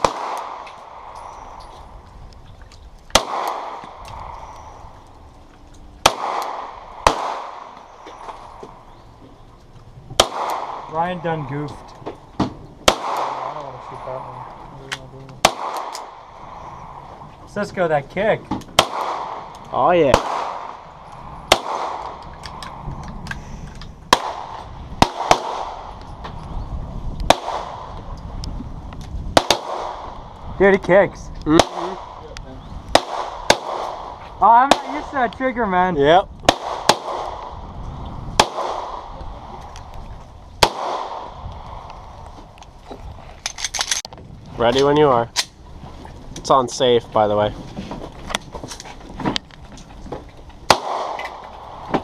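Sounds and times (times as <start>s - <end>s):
pistol shots with echo: 0.0s - 1.6s, 3.1s - 4.3s, 6.0s - 7.8s, 10.2s - 11.2s, 12.8s - 13.8s, 15.4s - 16.3s, 18.7s - 19.5s, 20.1s - 20.9s, 21.5s - 22.2s, 24.1s - 25.9s, 27.3s - 27.9s, 29.4s - 30.2s, 31.5s - 32.3s, 32.9s - 35.1s, 36.5s - 37.6s, 38.4s - 39.4s, 40.6s - 41.8s, 50.7s - 51.9s.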